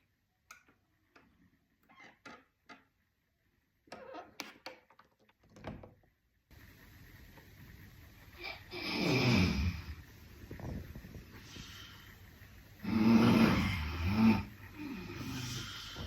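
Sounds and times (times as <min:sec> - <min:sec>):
steady faint hiss: 0:05.7 - 0:16.0.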